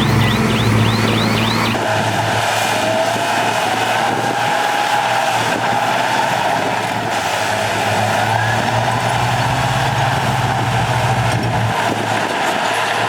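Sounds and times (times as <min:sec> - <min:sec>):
heavy machinery diesel drone: 0:00.0 - 0:12.0.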